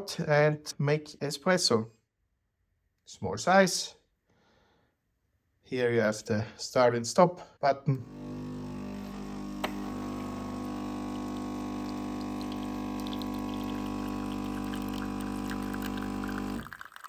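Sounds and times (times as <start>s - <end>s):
espresso machine humming: 8.0s - 17.0s.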